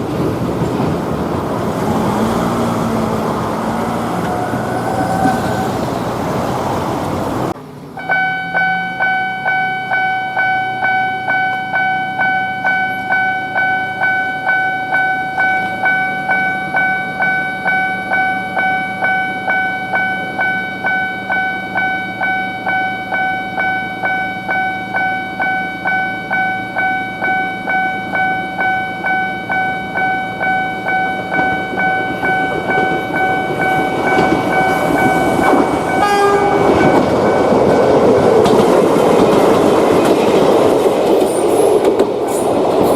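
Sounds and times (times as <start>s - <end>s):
level crossing bell ringing: 8.0s - 38.1s.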